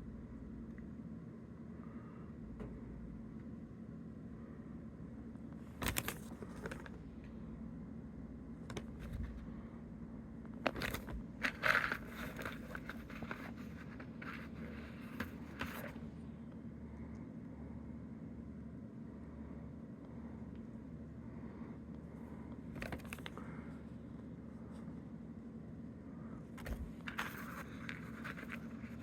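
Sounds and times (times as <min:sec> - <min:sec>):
packaging crinkling and rustling: 0:10.6 - 0:16.0.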